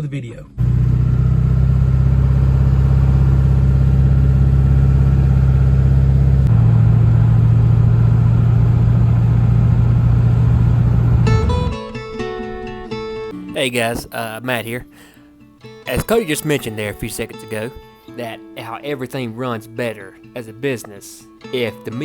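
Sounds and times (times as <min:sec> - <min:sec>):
engine running with low hum: 0:00.6 - 0:13.0.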